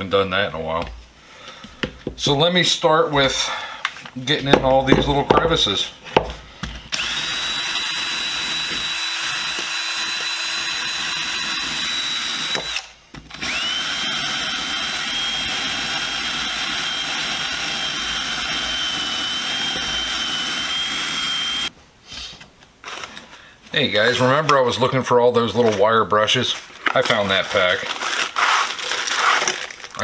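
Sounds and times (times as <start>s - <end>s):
rotary tool wire brush whine: 6.9s - 21.7s, 27.0s - 30.0s.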